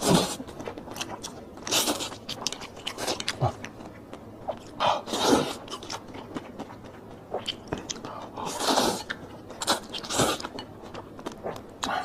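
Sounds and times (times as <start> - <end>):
wet chewing: 0.0 - 12.0.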